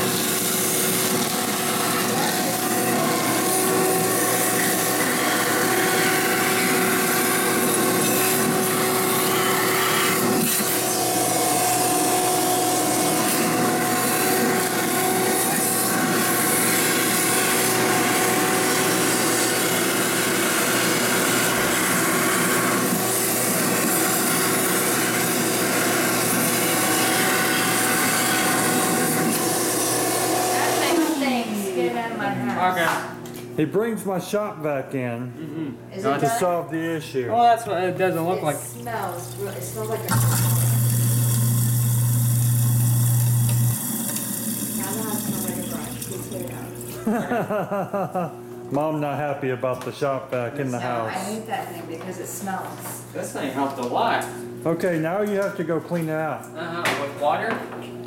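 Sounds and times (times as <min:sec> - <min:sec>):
garbage disposal grinding: 0:00.0 - 0:31.6, 0:38.5 - 0:47.5.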